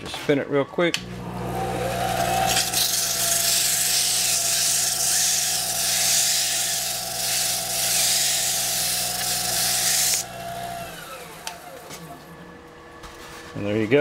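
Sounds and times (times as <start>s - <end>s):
lathe motor humming: 1.0s - 13.0s
sandpaper hissing on spinning wood: 2.5s - 10.3s.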